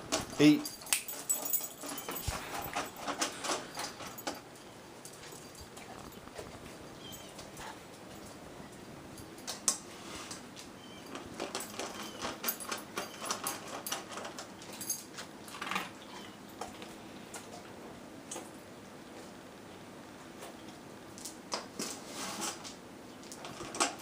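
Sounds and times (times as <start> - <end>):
dog eating from bowl: 0.0 - 18.6, 23.4 - 24.0.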